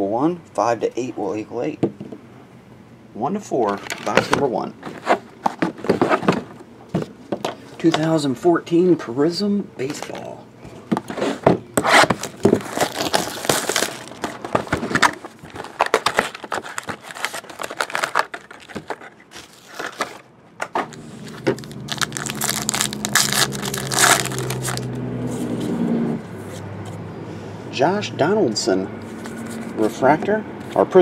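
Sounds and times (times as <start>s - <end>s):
plastic and foil wrapping crinkling: 11.8s - 20.3s, 20.9s - 25.0s.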